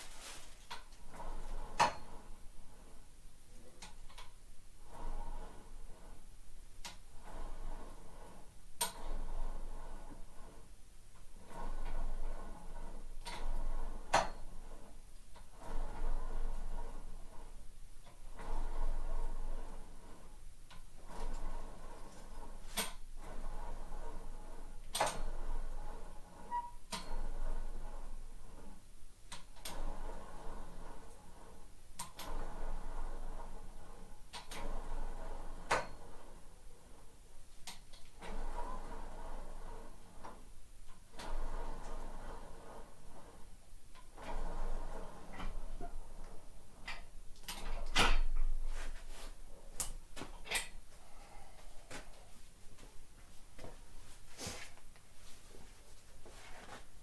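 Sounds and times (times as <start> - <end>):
faint rustle: 0.0 - 0.8.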